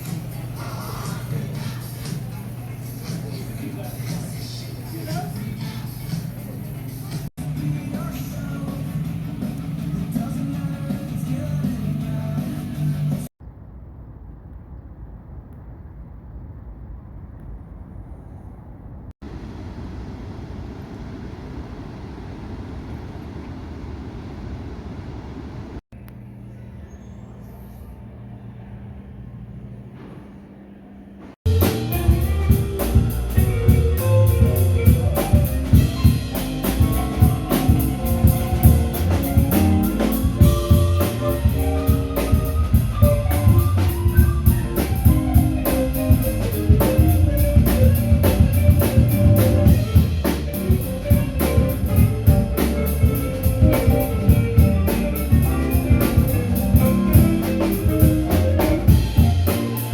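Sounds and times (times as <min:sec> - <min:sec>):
live rock band playing: 0:31.5 - 0:59.9.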